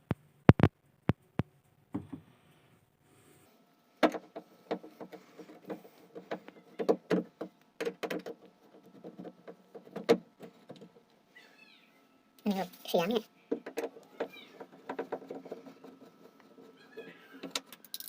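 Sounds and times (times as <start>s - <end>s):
knocking and rattling: 4.0s - 11.0s, 13.5s - 17.7s.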